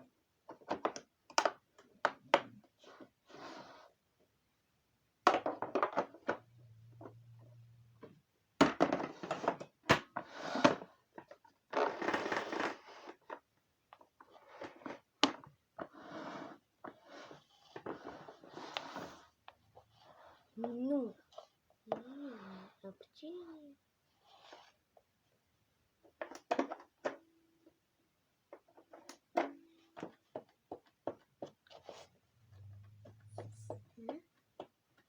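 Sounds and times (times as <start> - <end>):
plastic parts clicking and knocking: 0.4 - 2.7, 5.3 - 7.3, 26.0 - 27.8, 28.4 - 31.7.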